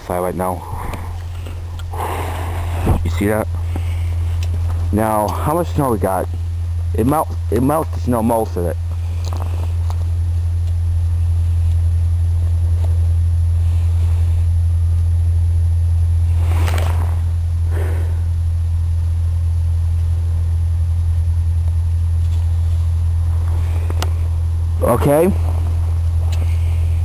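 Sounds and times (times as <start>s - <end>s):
loud low rumble: 0.0s - 27.0s
short hissing: 16.3s - 18.4s.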